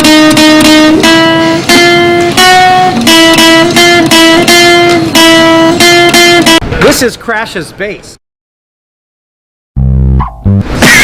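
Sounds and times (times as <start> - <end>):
chopped guitar notes: 0.0 - 6.6, 9.8 - 11.0.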